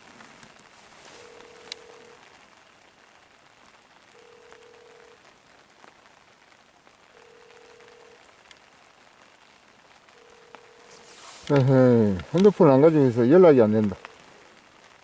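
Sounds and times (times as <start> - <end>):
steady hiss: 0.0 - 15.0
phone ringback tone: 1.1 - 2.2, 4.2 - 5.2, 7.2 - 8.2, 10.1 - 12.5, 13.8 - 14.2.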